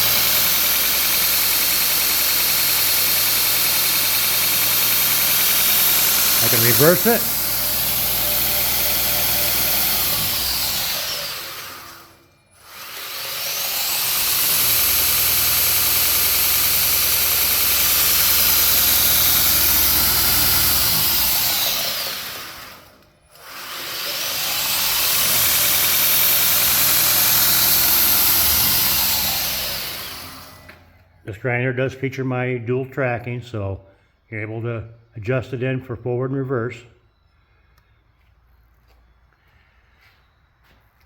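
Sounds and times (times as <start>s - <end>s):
belt grinder motor running: 0.0s - 31.0s.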